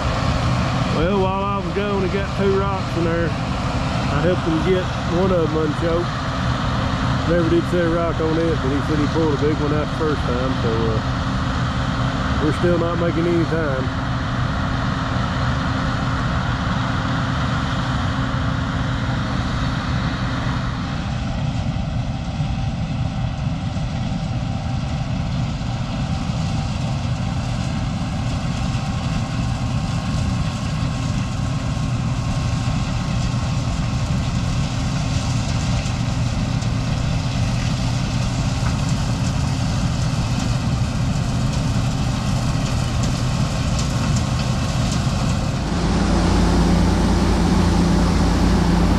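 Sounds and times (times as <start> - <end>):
heavy vehicle engine idling: 0.0 - 16.0, 33.1 - 48.9.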